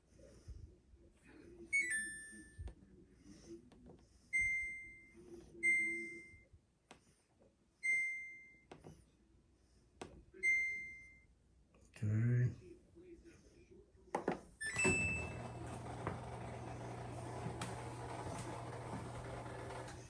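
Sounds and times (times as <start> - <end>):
washer control panel beeping: 14.6 - 20.0.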